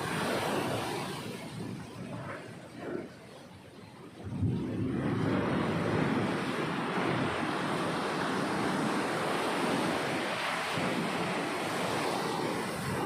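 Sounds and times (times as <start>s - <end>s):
sea waves breaking on beach: 0.0s - 13.0s.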